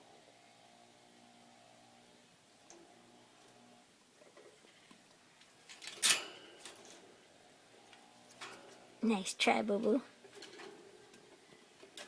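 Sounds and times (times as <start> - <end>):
loud cage clatter: 5.6 - 7.3, 8.1 - 9.0, 10.2 - 12.0
light clicks in wire cage: 5.7 - 7.1.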